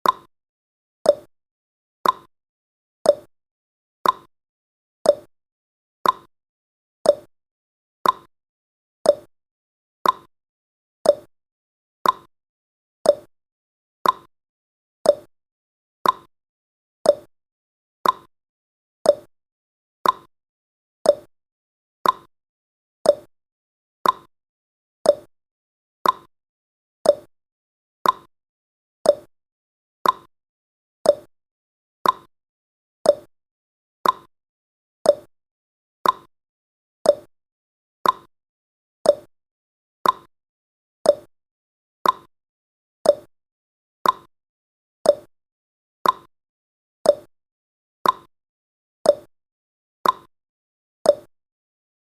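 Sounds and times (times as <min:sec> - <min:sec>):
clock ticking: 0:32.0 - 0:32.3, 0:34.0 - 0:34.3, 0:38.0 - 0:38.3, 0:40.0 - 0:40.3, 0:42.0 - 0:42.3, 0:44.0 - 0:44.3, 0:46.0 - 0:46.3, 0:48.0 - 0:48.3, 0:50.0 - 0:50.3.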